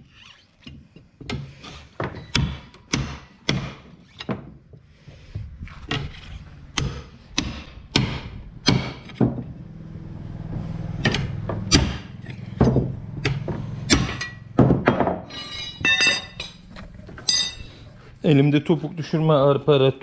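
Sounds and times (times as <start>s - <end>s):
steady low hum: 5.0s - 19.8s
hammer striking metal: 6.8s - 9.3s, 11.0s - 17.7s.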